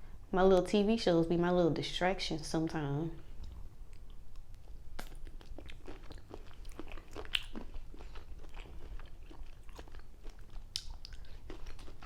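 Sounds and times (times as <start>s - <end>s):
chewing and biting shrimp: 3.4s - 12.0s.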